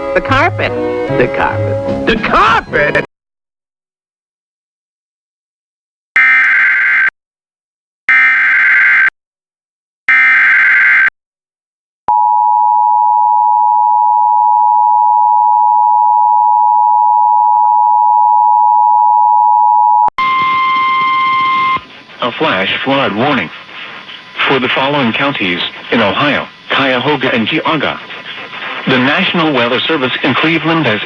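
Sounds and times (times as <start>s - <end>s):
two-tone attention signal: 19.2s - 21.9s
screeching digital data bursts: 20.2s - 30.9s.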